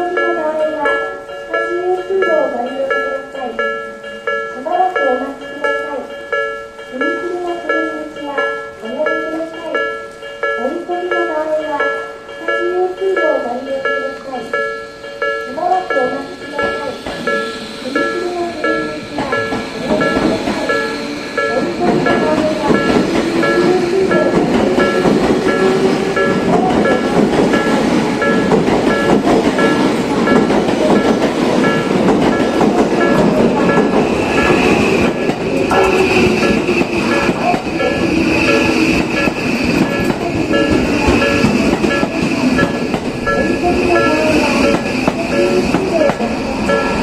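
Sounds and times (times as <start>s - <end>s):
level-crossing warning bell: 0.0s - 47.0s
train wheels clattering on rails: 5.0s - 47.0s
train motor whine: 14.4s - 47.0s.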